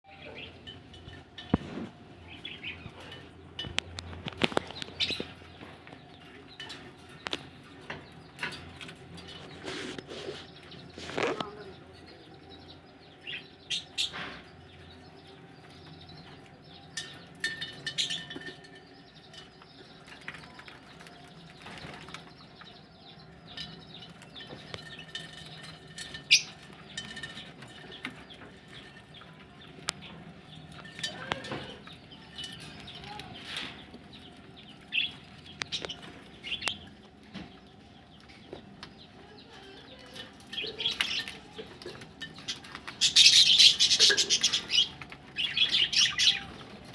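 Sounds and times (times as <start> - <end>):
budgerigars chirping: 42.4 - 46.9.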